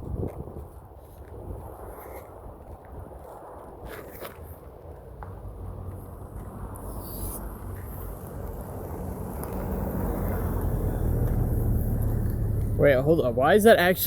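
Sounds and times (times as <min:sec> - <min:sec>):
truck engine approaching: 0:05.6 - 0:14.0.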